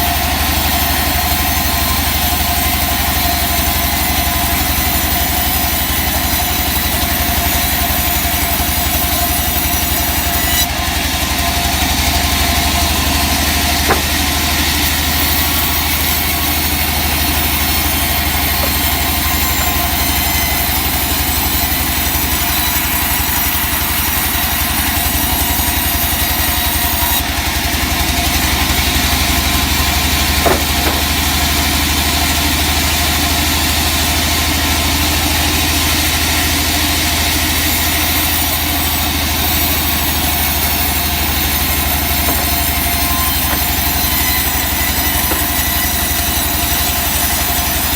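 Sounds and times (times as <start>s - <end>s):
sawmill engine humming: 0.0s - 47.9s
short sharp knock: 13.9s - 14.5s, 30.4s - 31.4s, 42.3s - 44.0s.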